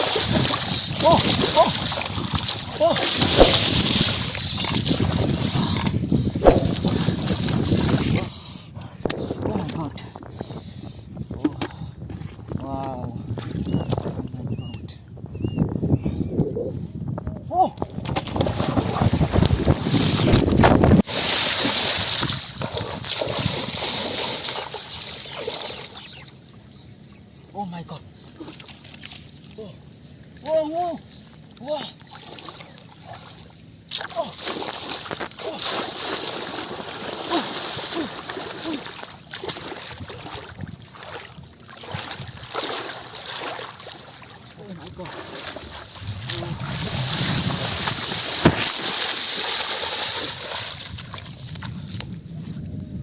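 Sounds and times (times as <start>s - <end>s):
river water splashing: 0.0s - 8.1s, 18.2s - 26.6s, 31.5s - 52.0s
wind buffeting microphone: 0.0s - 21.1s, 39.8s - 42.5s, 44.6s - 48.7s, 50.0s - 53.0s.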